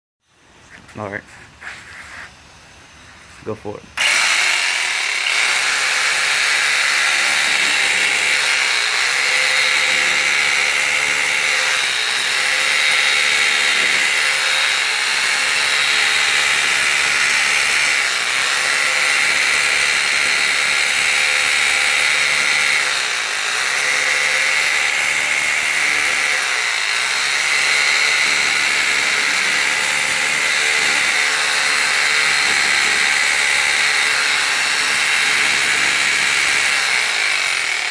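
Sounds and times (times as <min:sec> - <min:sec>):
saw cutting mortar: 0:00.7 - 0:37.9.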